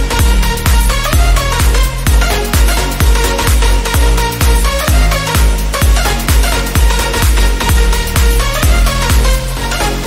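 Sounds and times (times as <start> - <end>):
kick drum: 0.0 - 10.0
sustained synth layers: 0.0 - 10.0.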